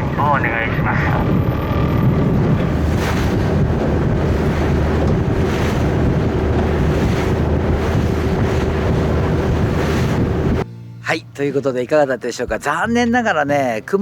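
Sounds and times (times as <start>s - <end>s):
boat engine running: 0.0s - 10.7s
water rushing along hull: 0.0s - 10.7s
wind buffeting microphone: 0.0s - 10.7s.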